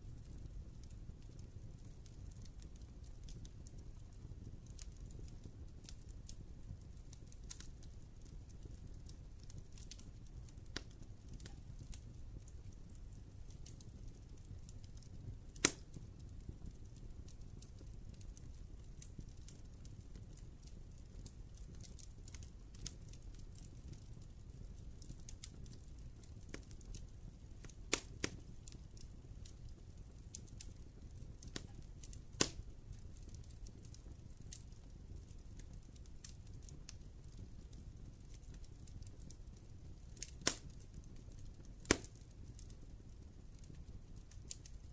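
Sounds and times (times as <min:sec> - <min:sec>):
wood fire crackling: 0:00.0 - 0:44.9.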